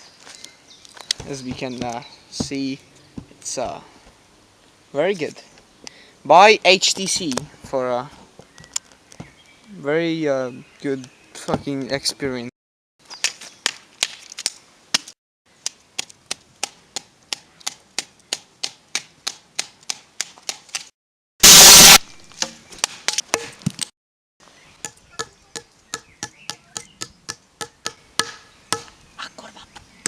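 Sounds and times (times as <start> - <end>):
loud distorted blast: 21.4 - 22.0.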